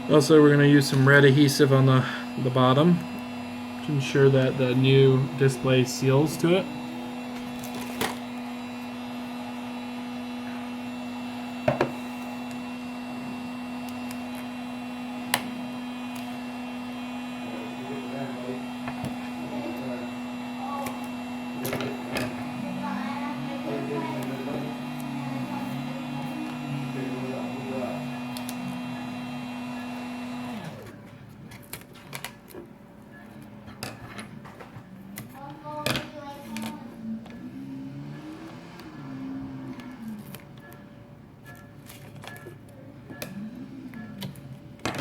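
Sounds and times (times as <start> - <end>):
electrical hum: 0.0 - 45.0
low hum sliding down in pitch: 36.8 - 40.6.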